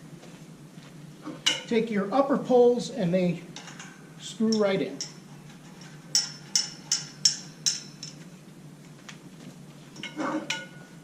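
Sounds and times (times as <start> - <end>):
metal poles clinking: 1.3 - 1.8, 3.6 - 8.3, 9.9 - 11.0.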